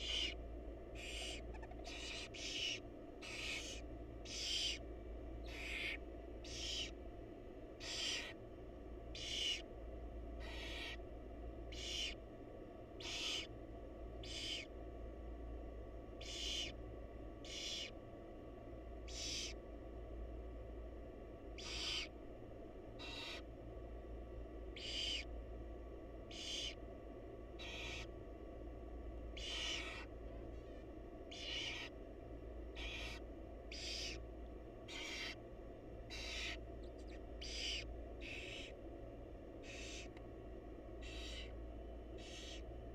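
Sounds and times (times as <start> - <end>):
owl nestlings hissing calls: 0.0 - 4.8, 5.4 - 7.0, 7.8 - 8.4, 9.1 - 9.7, 10.4 - 11.0, 11.7 - 12.2, 13.0 - 13.5, 14.2 - 14.7, 16.2 - 16.8, 17.4 - 18.0, 19.0 - 19.6, 21.6 - 22.1, 23.0 - 23.5, 24.7 - 25.3, 26.3 - 26.8, 27.6 - 28.1, 29.3 - 30.1, 31.3 - 32.0, 32.7 - 34.2, 34.8 - 35.4, 36.1 - 38.8, 39.6 - 40.1, 41.0 - 41.6, 42.2 - 42.6
low electrical hum: 0.0 - 42.9.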